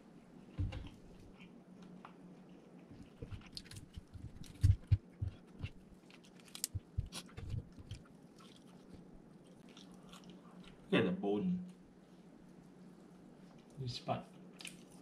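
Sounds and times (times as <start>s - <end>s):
crunchy chewing: 0.7s - 10.9s.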